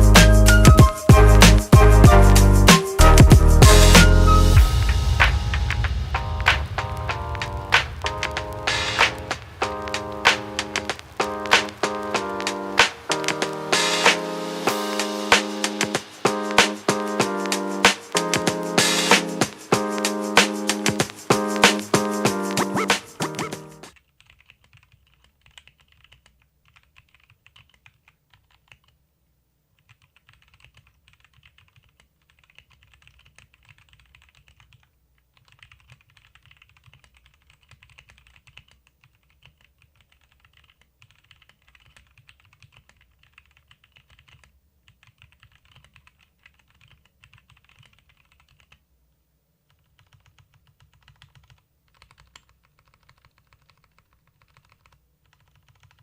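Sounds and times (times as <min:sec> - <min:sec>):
mechanical keyboard typing: 0:16.6 - 0:29.0, 0:29.8 - 0:48.8, 0:49.7 - 0:56.0.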